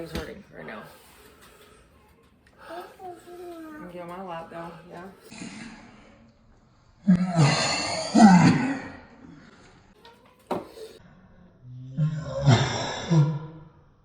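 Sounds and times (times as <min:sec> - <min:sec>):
man heaving and groaning: 0:07.0 - 0:09.4.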